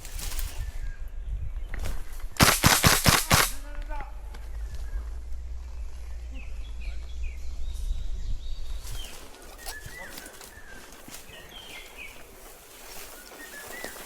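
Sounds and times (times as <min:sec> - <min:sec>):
wind rumble on microphone: 0:00.0 - 0:02.4, 0:04.2 - 0:12.4
sharp clicks: 0:02.4 - 0:03.6
small birds chirping: 0:03.8 - 0:14.0.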